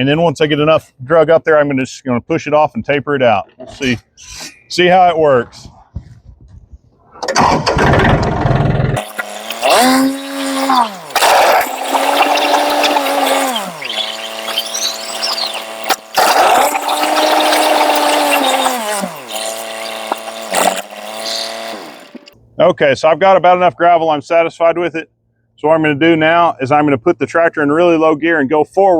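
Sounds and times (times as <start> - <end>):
tractor diesel engine under load: 7.4 - 22.4.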